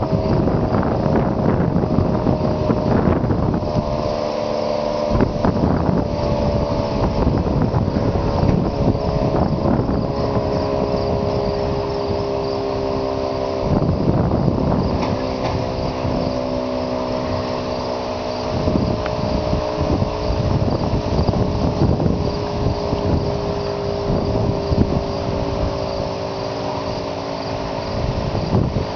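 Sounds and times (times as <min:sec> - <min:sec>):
multi-tone warning siren: 0:00.0 - 0:28.9
wind buffeting microphone: 0:00.0 - 0:28.9.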